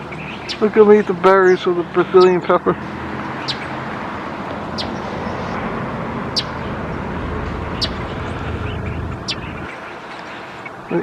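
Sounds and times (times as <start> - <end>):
bird chirping: 0.0 - 3.8, 4.7 - 5.6, 6.3 - 10.0
outdoor rushing noise: 0.0 - 10.9.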